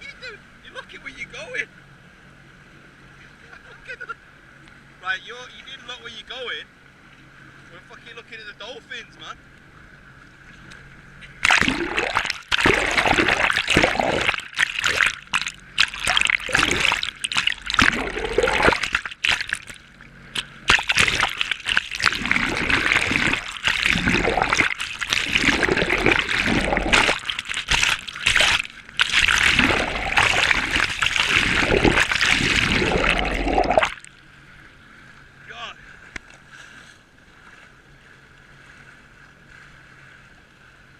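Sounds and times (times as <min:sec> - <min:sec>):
sea water rushing and splashing: 0:09.7 - 0:40.9.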